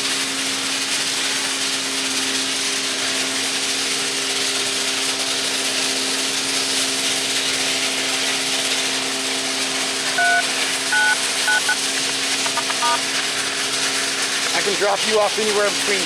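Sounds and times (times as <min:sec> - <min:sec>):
engine hum with hiss: 0:00.0 - 0:16.0
phone keypad beeps: 0:10.2 - 0:11.8, 0:12.4 - 0:13.0.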